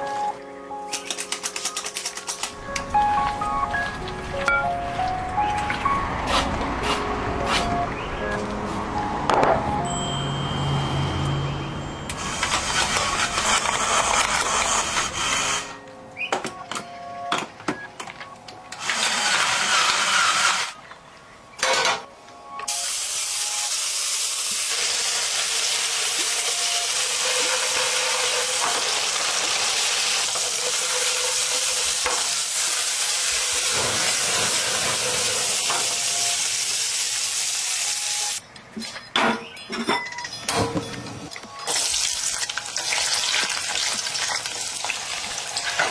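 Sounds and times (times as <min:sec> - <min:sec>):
food sizzling in hot oil: 0:22.7 - 0:38.4, 0:41.7 - 0:45.9.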